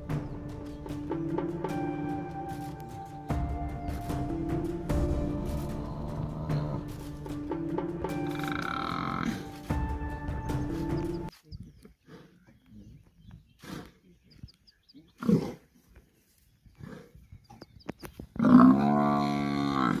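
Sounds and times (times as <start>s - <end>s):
buffalo calling: 5.0s - 7.1s, 8.0s - 9.7s, 18.3s - 20.0s
lions growling: 5.0s - 9.7s, 18.4s - 20.0s.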